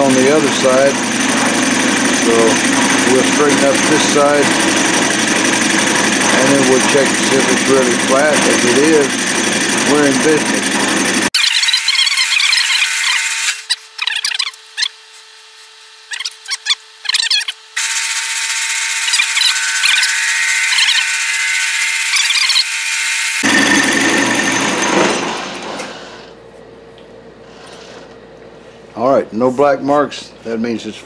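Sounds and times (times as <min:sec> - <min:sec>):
lathe cut squealing: 0:00.0 - 0:14.9, 0:16.1 - 0:26.0
motor whine: 0:00.0 - 0:28.3.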